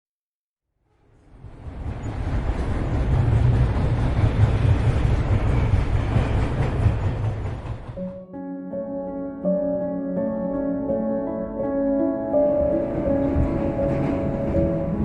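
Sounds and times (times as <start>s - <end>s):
noisy rattle: 1.4s - 8.0s.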